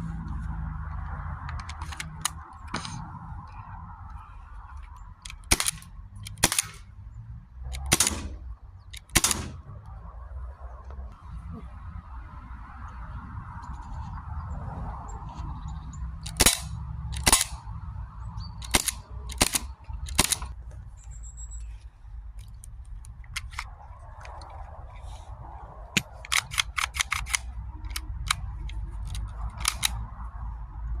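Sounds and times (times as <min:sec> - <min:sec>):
steady low rumble: 0:00.0 - 0:31.0
airsoft pistol shots: 0:07.9 - 0:08.4, 0:09.1 - 0:09.6.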